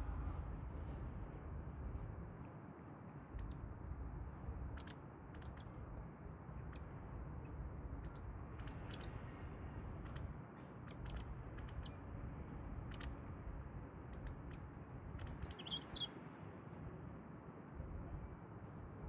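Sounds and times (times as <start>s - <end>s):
low background rumble: 0.0s - 2.5s, 3.2s - 16.1s, 16.7s - 19.0s
bird chirping calls: 8.0s - 9.2s, 10.0s - 12.0s, 12.9s - 13.2s, 15.2s - 16.2s.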